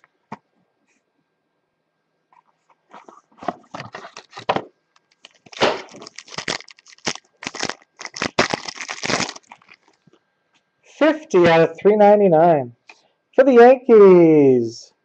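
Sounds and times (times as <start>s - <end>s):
card pack wrapper tearing and crinkling: 3.7s - 10.0s.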